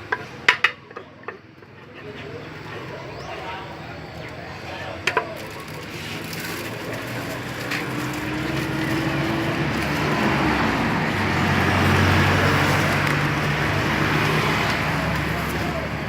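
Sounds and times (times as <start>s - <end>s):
vehicle passing on road: 2.2s - 16.0s.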